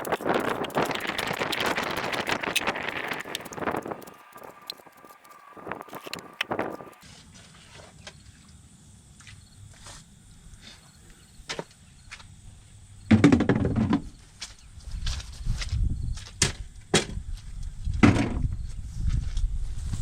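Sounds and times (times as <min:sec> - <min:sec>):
water being bailed: 0:00.0 - 0:07.0.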